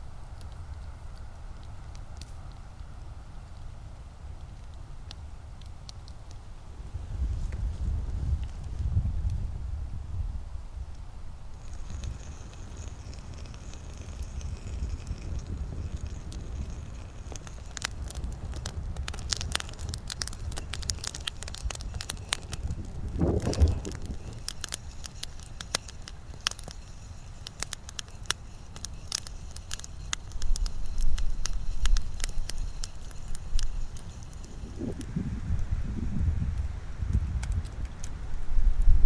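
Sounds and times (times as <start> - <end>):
campfire crackling and popping: 0.0 - 9.4, 11.4 - 39.0
wind rumble on microphone: 0.0 - 39.0.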